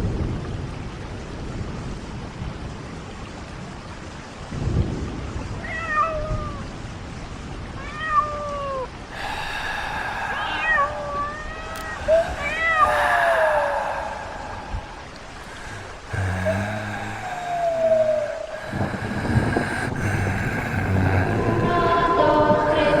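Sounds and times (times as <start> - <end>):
steady rain: 0.0 - 23.0
cat meowing: 5.6 - 6.6, 7.8 - 8.9, 10.3 - 13.8
thunder rolling: 9.8 - 23.0.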